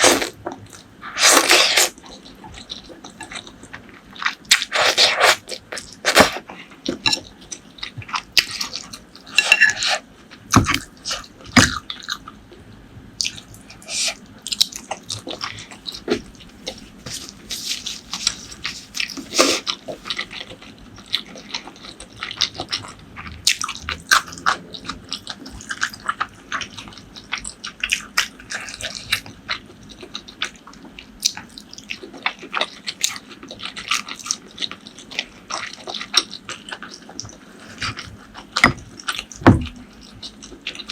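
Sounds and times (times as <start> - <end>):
chewing: 13.2 - 40.9.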